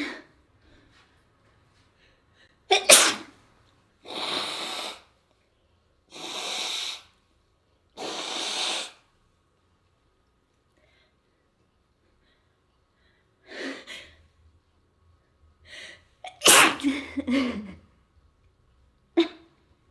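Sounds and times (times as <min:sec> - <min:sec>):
person sneezing: 0:02.7 - 0:03.4, 0:06.1 - 0:07.0, 0:08.0 - 0:09.0, 0:16.3 - 0:17.8
noisy breaths: 0:06.1 - 0:07.2.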